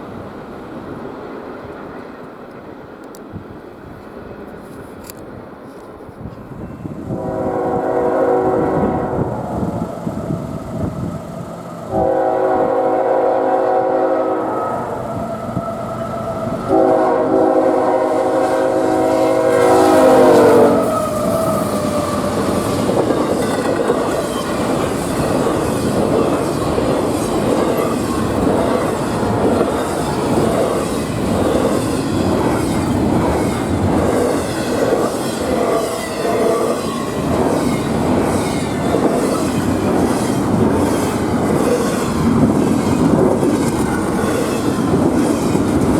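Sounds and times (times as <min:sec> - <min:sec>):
rail cars rumbling: 0:00.0 - 0:45.9
train wheels clacking: 0:04.0 - 0:45.9
locomotive air horn: 0:07.1 - 0:23.4, 0:35.4 - 0:37.0.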